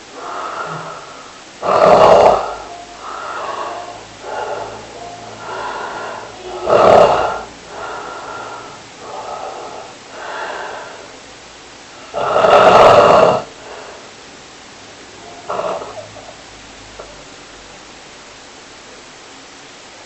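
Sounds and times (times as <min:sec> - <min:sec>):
soft breaths: 0:00.0 - 0:01.6, 0:02.2 - 0:12.2, 0:13.4 - 0:14.2
loud snores: 0:00.2 - 0:11.1, 0:12.0 - 0:14.0, 0:15.2 - 0:16.4.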